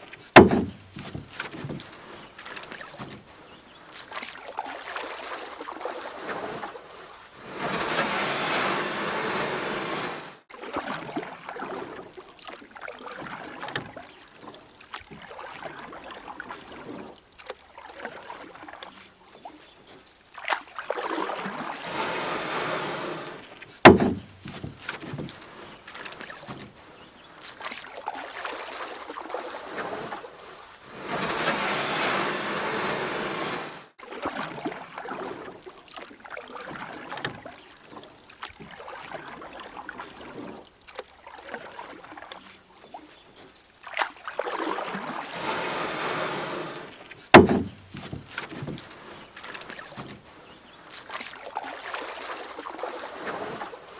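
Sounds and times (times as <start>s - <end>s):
water splashing around kayak: 0.0s - 53.9s
sharp knock: 0.4s - 1.0s, 23.9s - 24.7s, 47.4s - 48.2s.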